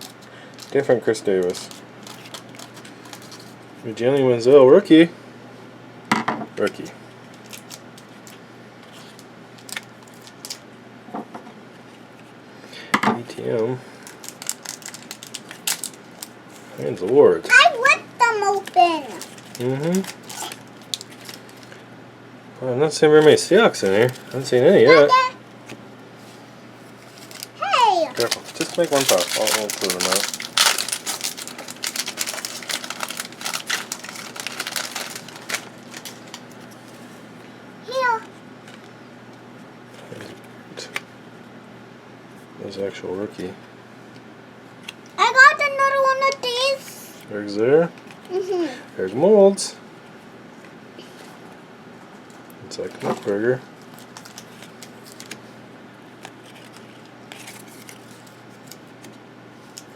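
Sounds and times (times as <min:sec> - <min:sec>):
trading cards clicking and rustling: 0:00.0 - 0:03.5, 0:27.1 - 0:37.0, 0:56.2 - 0:59.1
plastic wrappers crinkling: 0:00.0 - 0:03.6, 0:07.3 - 0:10.6, 0:14.0 - 0:16.9, 0:18.5 - 0:21.8, 0:23.2 - 0:25.0, 0:26.9 - 0:37.1, 0:53.0 - 0:55.4, 0:56.2 - 0:59.9
low room hum: 0:00.0 - 0:59.9.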